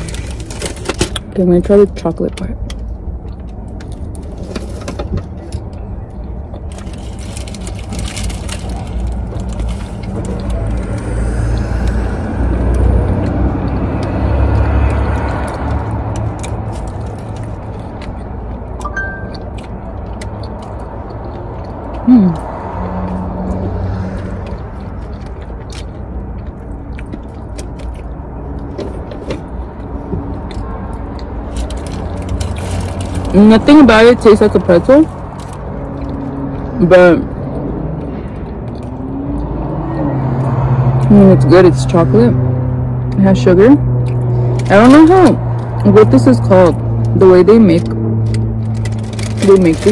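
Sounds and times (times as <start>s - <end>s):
low rumble: 2.3s - 33.7s
person chewing: 5.4s - 33.3s, 35.1s - 36.8s, 37.4s - 41.1s, 43.8s - 44.6s
person humming: 22.0s - 22.5s.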